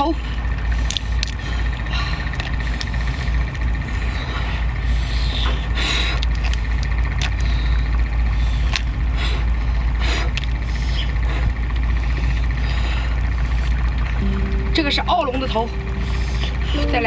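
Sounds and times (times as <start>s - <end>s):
lobster shell cracking: 6.1s - 7.8s
steady low hum: 6.5s - 17.0s.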